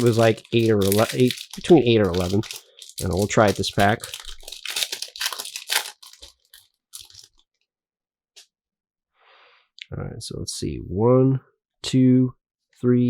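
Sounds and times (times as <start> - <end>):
foil wrapper crinkling: 0.0 - 7.4.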